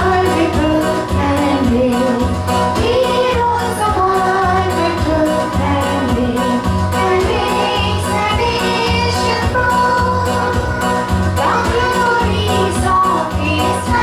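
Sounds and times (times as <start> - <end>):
instrumental music with beat: 0.0 - 14.0
person singing: 0.0 - 14.0.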